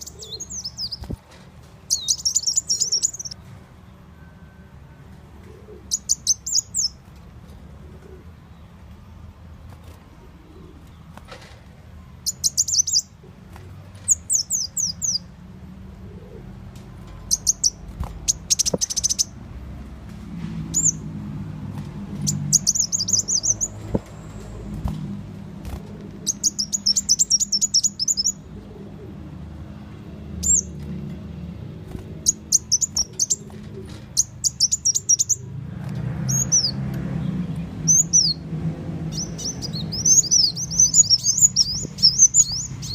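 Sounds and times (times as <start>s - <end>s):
bird chirping: 0.0s - 1.2s, 1.8s - 3.5s, 5.8s - 7.0s, 12.2s - 13.2s, 14.0s - 15.3s, 17.0s - 19.4s, 20.7s - 21.1s, 22.1s - 25.1s, 25.7s - 28.5s, 30.4s - 30.8s, 32.1s - 35.5s, 36.2s - 38.4s, 39.0s - 42.9s.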